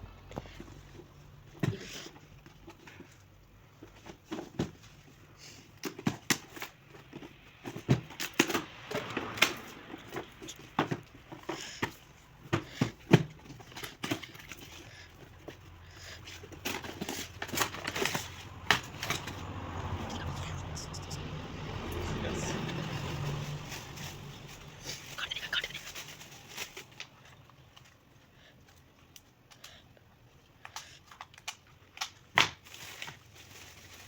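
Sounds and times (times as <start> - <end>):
packaging crinkling and clicks: 30.6 - 34.0.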